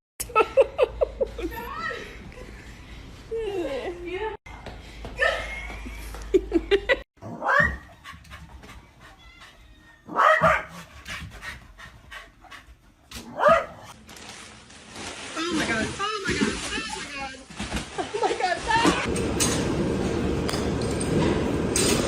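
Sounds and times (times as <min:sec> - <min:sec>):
dog barking: 0:10.1 - 0:10.8, 0:13.3 - 0:13.9.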